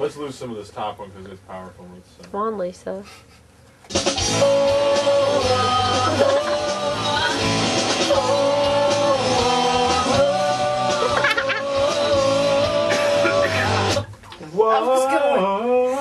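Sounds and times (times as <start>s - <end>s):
rock backing track: 3.9s - 14.2s.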